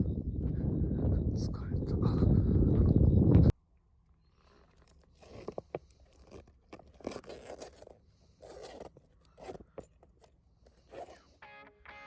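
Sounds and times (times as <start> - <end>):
scraping and clicking handling noises: 4.4 - 11.2.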